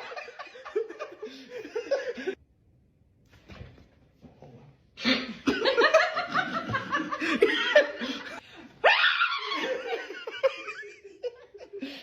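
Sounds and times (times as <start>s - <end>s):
people laughing hard: 0.0s - 2.4s, 5.0s - 12.0s.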